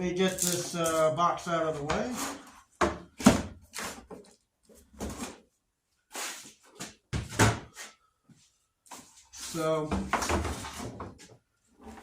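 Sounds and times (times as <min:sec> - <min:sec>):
box knocking and thumping: 0:02.8 - 0:03.6.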